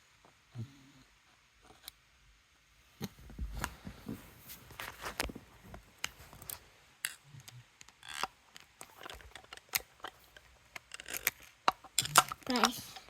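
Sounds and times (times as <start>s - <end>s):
small tools clicking and tapping: 6.0s - 13.0s
metal parts scraping: 8.0s - 13.0s.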